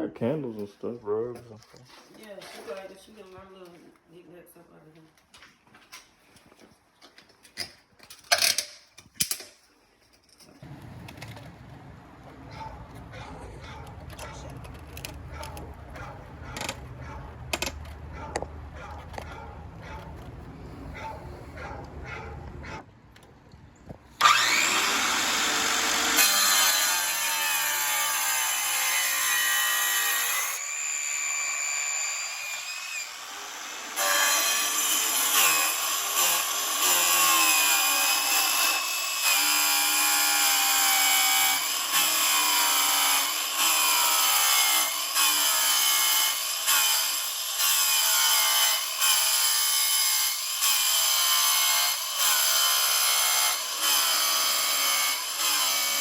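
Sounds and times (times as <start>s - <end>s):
power saw cutting: 24.2s - 56.0s.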